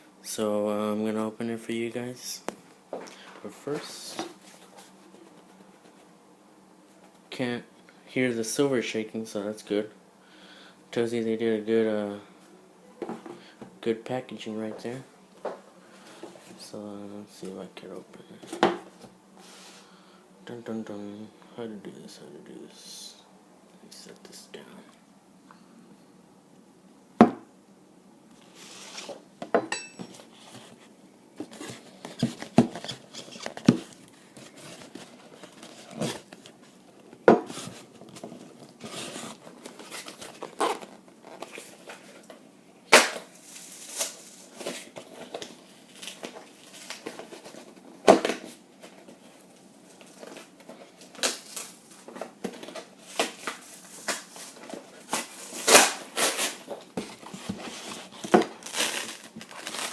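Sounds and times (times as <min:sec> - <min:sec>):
packing material rustling and tearing: 0:31.4 - 0:36.9, 0:37.5 - 0:42.2, 0:42.9 - 0:48.5, 0:49.8 - 0:59.9.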